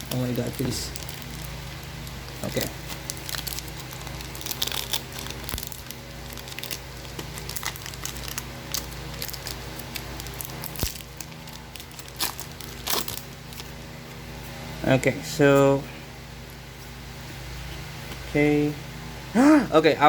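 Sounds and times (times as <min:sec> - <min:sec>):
foil wrapper crinkling and tearing: 0:00.0 - 0:13.8
low electrical hum: 0:00.0 - 0:20.0.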